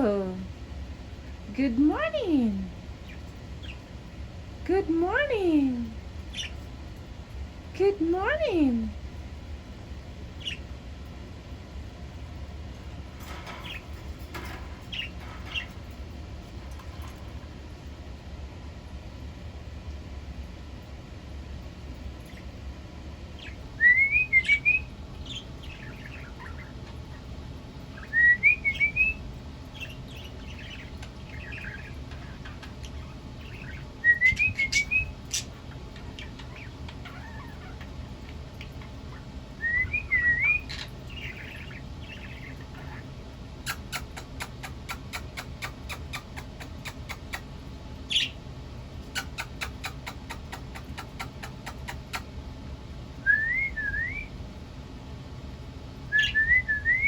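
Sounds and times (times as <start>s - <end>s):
bird soft chattering: 13.2s - 16.1s, 28.0s - 47.5s, 49.0s - 52.3s.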